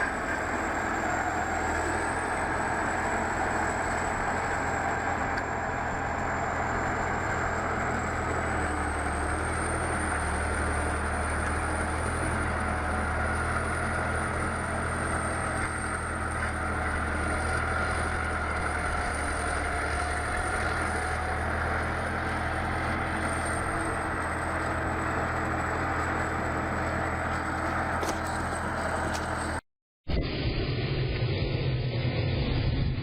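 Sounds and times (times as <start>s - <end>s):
heavy vehicle engine running: 0.0s - 29.6s, 30.2s - 33.0s.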